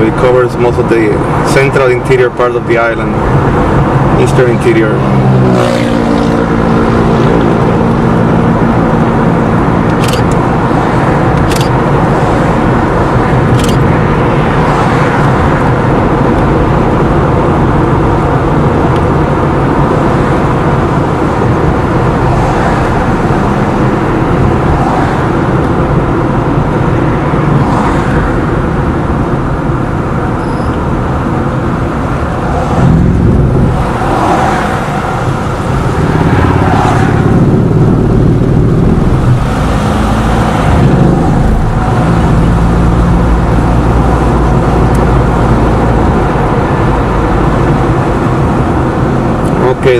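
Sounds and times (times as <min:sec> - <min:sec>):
car road and engine noise: 0:00.0 - 0:49.9
sharp clicks: 0:09.9 - 0:10.4.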